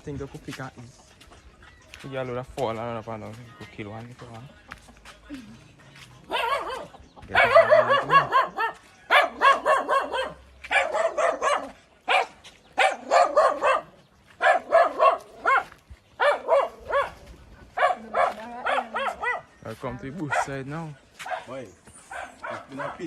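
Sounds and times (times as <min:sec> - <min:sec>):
dog barking: 0:06.2 - 0:23.0.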